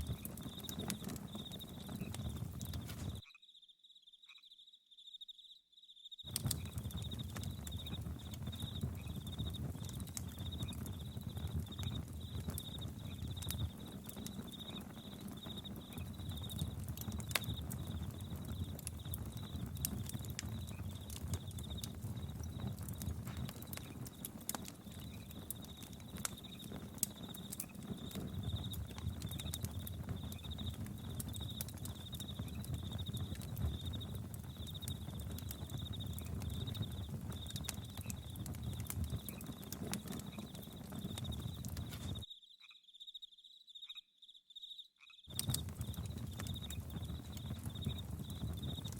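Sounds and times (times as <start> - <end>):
campfire crackling: 0.0 - 3.2, 6.3 - 42.3, 45.3 - 48.9
crickets chirping: 0.0 - 48.9
frogs knocking chorus: 6.3 - 42.8, 45.2 - 48.9.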